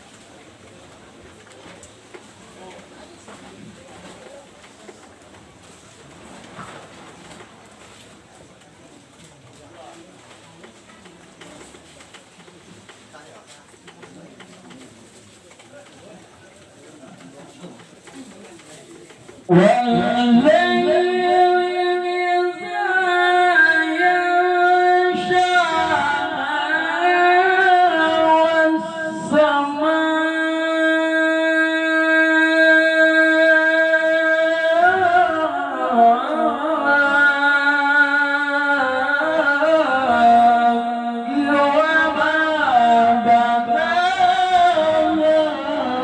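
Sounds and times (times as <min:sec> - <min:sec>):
man reciting melodic chant: 0:19.4 - 0:46.0.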